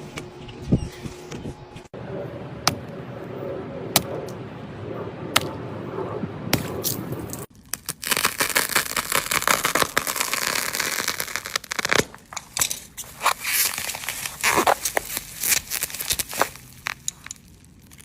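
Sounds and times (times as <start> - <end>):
crisp material crunching: 7.5 - 12.4, 13.0 - 18.0.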